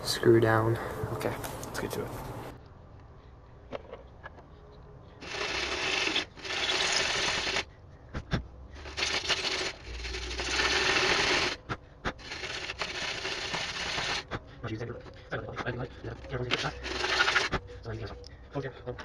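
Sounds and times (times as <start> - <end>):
rasping sanding of metal: 12.2 - 14.2.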